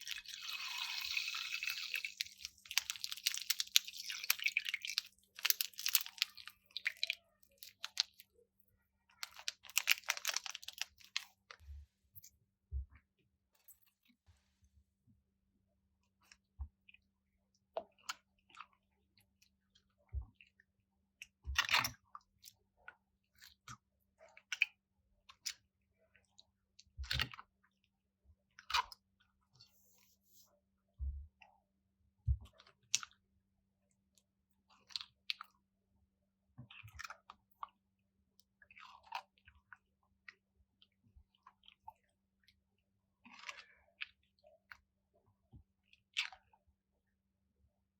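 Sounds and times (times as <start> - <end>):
slime crackling and crunching: 0.0 - 8.2, 9.2 - 11.5.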